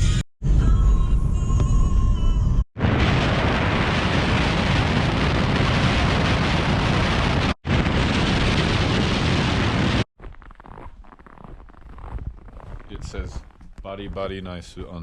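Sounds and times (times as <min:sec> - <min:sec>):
wind noise on microphone: 0:00.7 - 0:10.8.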